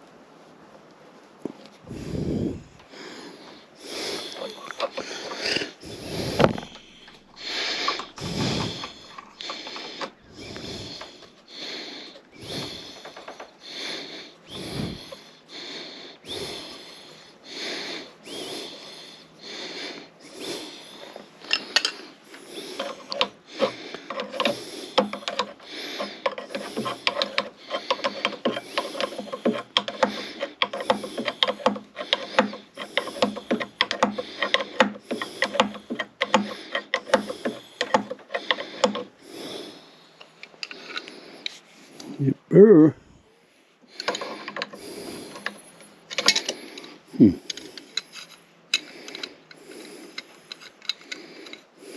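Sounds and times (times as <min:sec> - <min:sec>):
hand tools working metal: 0:04.0 - 0:11.2, 0:21.4 - 0:39.2, 0:44.0 - 0:51.7
rapid clicking: 0:22.8 - 0:39.2, 0:44.0 - 0:46.6.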